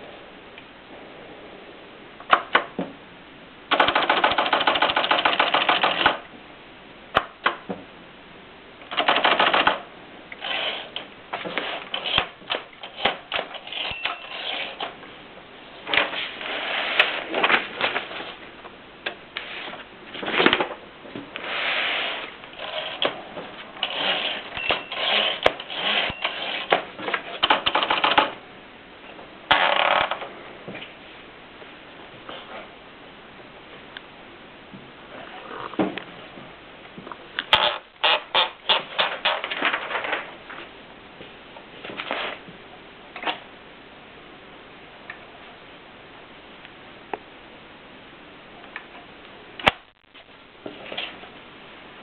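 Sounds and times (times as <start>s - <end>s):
typewriter keys clacking: 3.7s - 6.2s, 8.9s - 9.8s, 23.8s - 28.3s.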